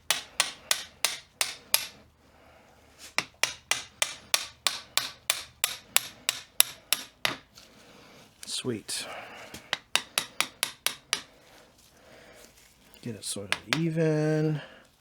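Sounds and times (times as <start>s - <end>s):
hammer tapping metal pin: 0.0s - 2.0s, 3.2s - 7.5s, 9.7s - 11.3s, 13.5s - 14.0s.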